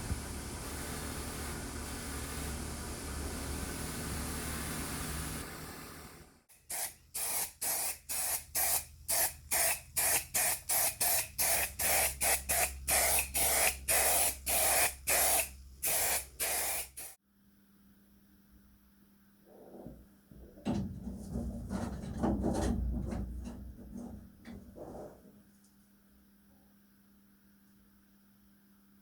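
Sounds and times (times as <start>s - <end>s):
spray nozzle bursts: 6.6s - 17.2s.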